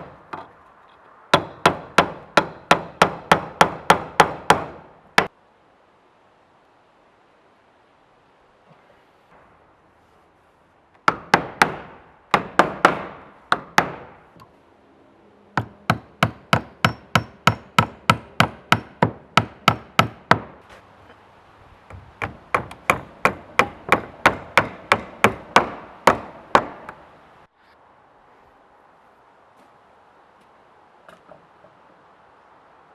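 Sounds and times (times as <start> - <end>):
hammer driving nails into wood: 21.9 - 27.0.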